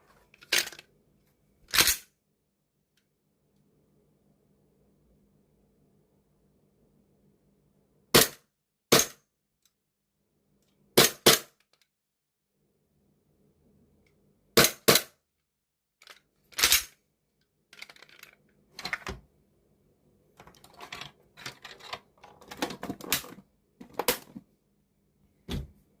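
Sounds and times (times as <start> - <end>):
pistol mechanical clicks and clatters: 1.7 - 2.1, 16.0 - 17.0.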